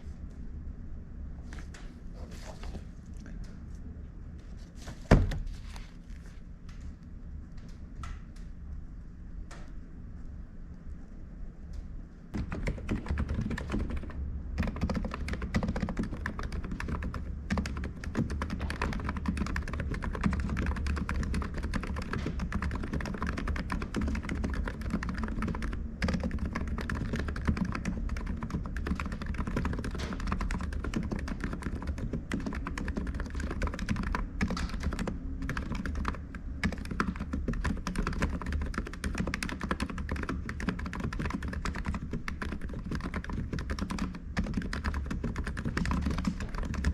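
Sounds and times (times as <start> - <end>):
keyboard typing clicks: 12.4 - 46.9.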